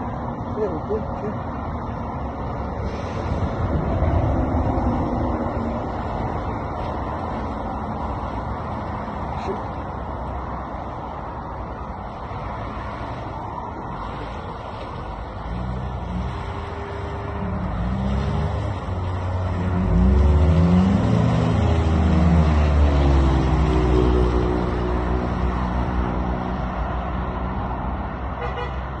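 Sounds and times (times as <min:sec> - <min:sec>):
car engine revving: 0:15.4 - 0:25.3.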